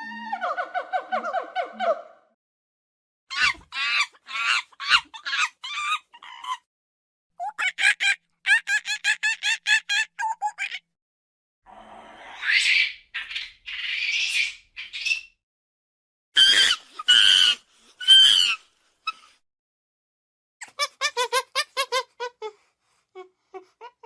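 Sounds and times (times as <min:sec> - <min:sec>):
monkey chattering and screeching: 0:03.3 - 0:06.6, 0:07.4 - 0:10.8.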